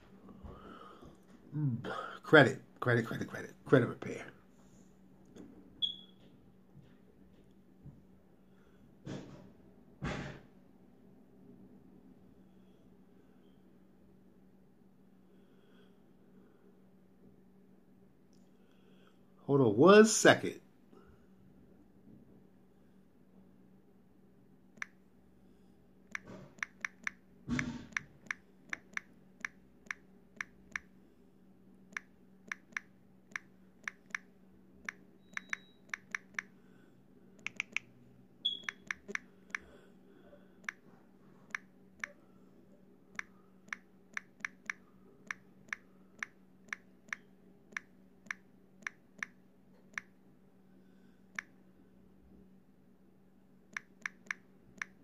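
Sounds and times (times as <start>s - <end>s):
low electrical hum: 0.0s - 55.0s
sharp clicks: 26.1s - 27.2s, 27.9s - 30.9s, 31.9s - 36.5s, 37.4s - 37.9s, 38.6s - 39.6s, 43.2s - 50.1s.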